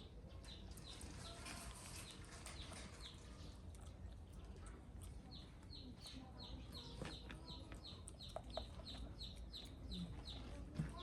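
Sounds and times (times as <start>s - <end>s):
bird chirping: 5.6s - 11.0s.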